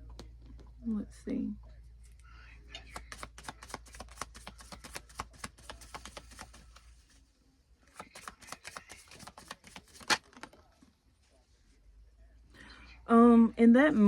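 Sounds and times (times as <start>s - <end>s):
cards being shuffled: 2.8s - 7.2s, 7.9s - 10.6s.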